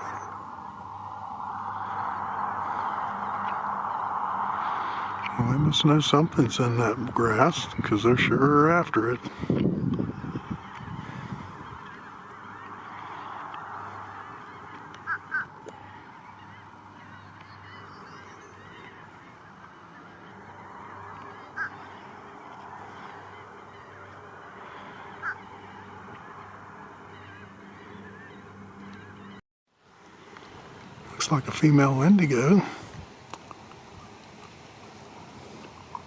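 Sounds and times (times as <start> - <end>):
steady background rush: 0.0 - 29.4
short bird calls: 9.2 - 29.4.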